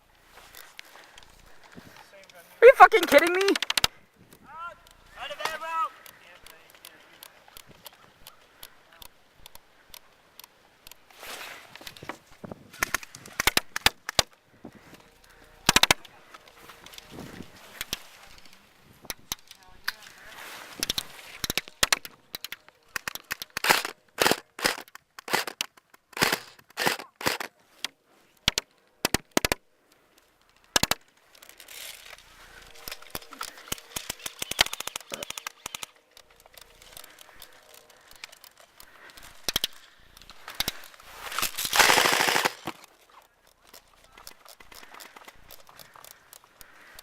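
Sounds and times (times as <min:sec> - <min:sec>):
airsoft guns firing: 0:23.0 - 0:25.6, 0:26.2 - 0:27.5, 0:40.4 - 0:42.8.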